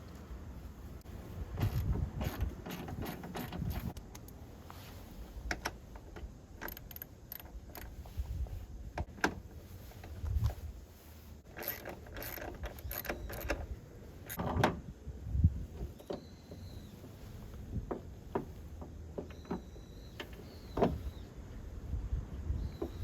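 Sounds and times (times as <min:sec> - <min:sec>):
tools clicking and knocking: 0:01.6 - 0:04.4, 0:05.5 - 0:08.0, 0:11.5 - 0:14.8.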